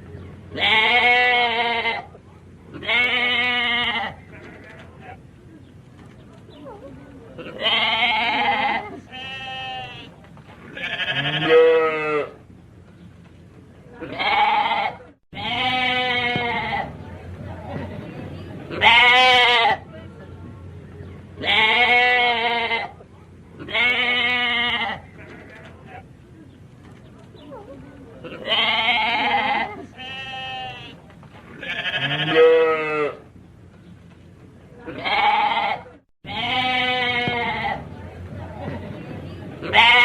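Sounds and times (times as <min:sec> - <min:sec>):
sheep bleating: 0:07.4 - 0:10.1, 0:10.8 - 0:12.3, 0:14.0 - 0:16.9, 0:28.3 - 0:31.0, 0:31.6 - 0:33.2, 0:34.9 - 0:37.8.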